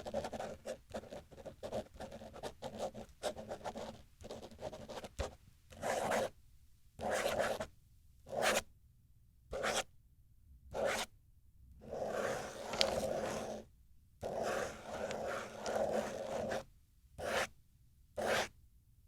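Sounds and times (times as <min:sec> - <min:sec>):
pen scratching on paper: 0:00.0 - 0:06.3, 0:07.0 - 0:07.7, 0:08.3 - 0:08.6, 0:09.5 - 0:09.8, 0:10.8 - 0:11.1, 0:11.8 - 0:17.5, 0:18.2 - 0:18.5.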